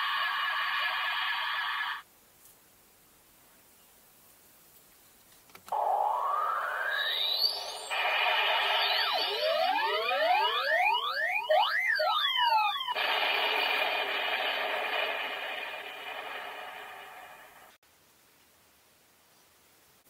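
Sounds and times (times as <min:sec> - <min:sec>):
rush of noise with rising sweep: 0:05.8 - 0:11.0
quick electronic tones: 0:05.8 - 0:13.2.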